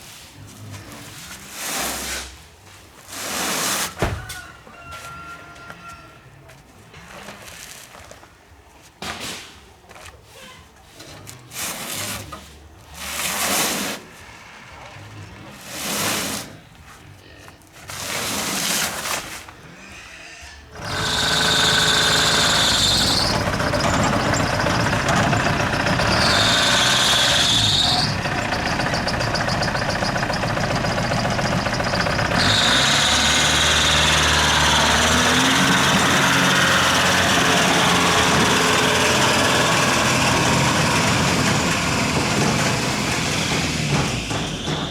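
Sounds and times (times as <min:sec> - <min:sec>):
heavy machinery running: 0:20.7 - 0:44.9.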